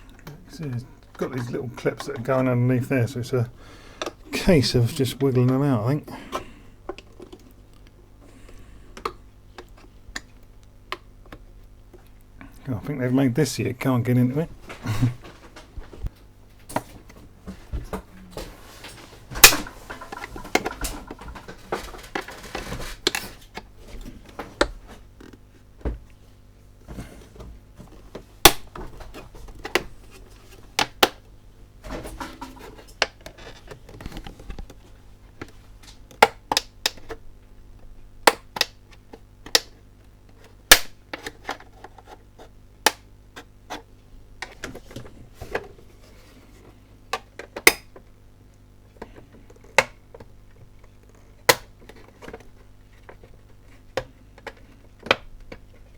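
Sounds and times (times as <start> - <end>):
plastic scraping against plastic: 0.0 - 12.2, 14.4 - 55.9
plastic clips clicking and snapping: 19.3 - 23.7, 28.4 - 29.9, 35.4 - 42.2, 42.9 - 43.8, 47.1 - 53.4.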